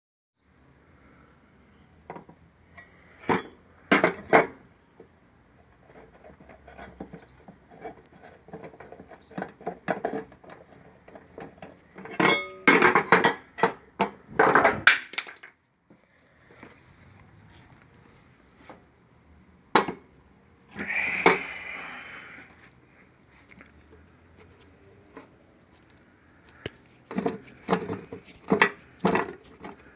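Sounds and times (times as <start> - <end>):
metal clanks and scraping: 2.1 - 4.6, 5.7 - 15.0, 27.0 - 29.9.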